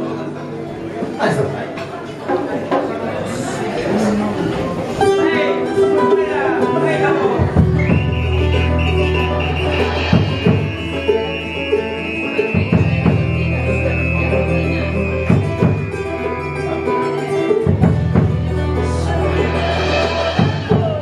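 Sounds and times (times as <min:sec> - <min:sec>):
band music: 0:03.5 - 0:21.0
high melody line: 0:05.0 - 0:20.7
bass: 0:06.2 - 0:21.0
drum hits: 0:07.4 - 0:11.5, 0:12.3 - 0:19.0.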